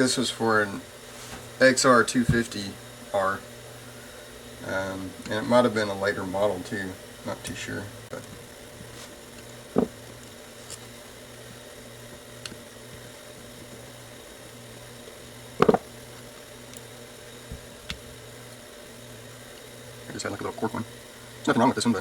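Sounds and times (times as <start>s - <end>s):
steady low hum: 0.0s - 22.0s
parts knocking on workbench: 9.7s - 10.0s, 15.6s - 15.9s.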